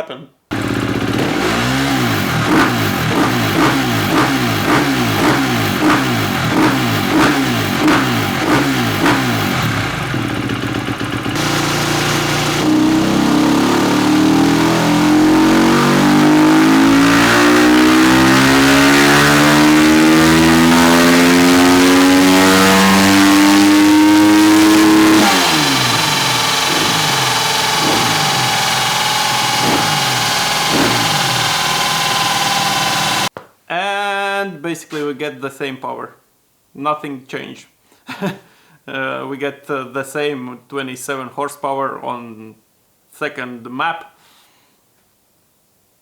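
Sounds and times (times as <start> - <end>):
motorcycle engine revving: 0.5 - 33.3.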